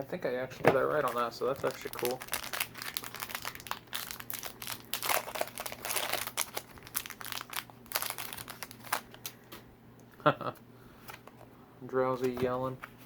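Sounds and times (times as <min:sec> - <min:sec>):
foil wrapper crinkling: 0:00.9 - 0:09.4.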